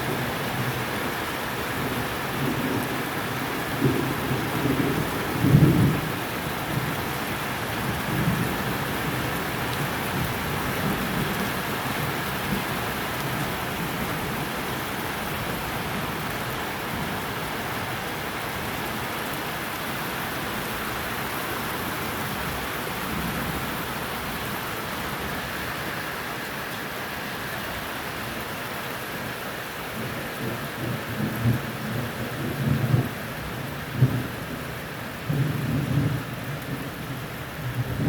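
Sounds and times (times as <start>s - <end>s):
steady rain falling: 0.0s - 38.0s
low rumbles of thunder: 1.9s - 7.1s, 30.0s - 38.0s.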